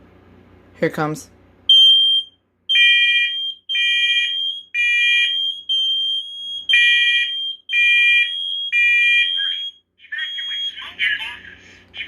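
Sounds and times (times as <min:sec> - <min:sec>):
smoke alarms beeping: 0:01.7 - 0:10.8.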